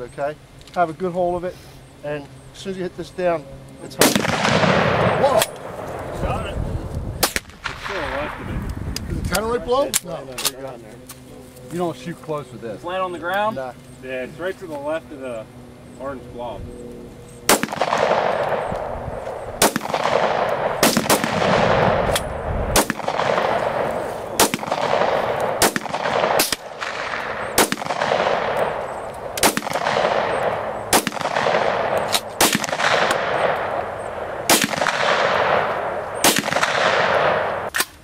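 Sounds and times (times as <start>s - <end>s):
gunshots with echo: 4.0s - 5.9s, 17.5s - 37.7s.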